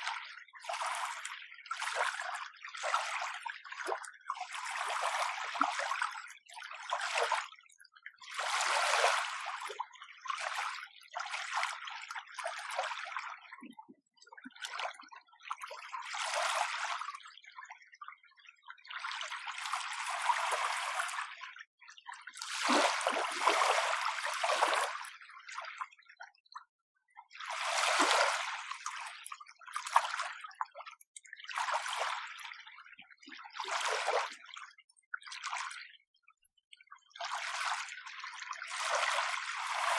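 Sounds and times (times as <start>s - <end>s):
small waves lapping on shore: 22.4s - 25.0s, 27.5s - 29.0s, 38.8s - 39.9s.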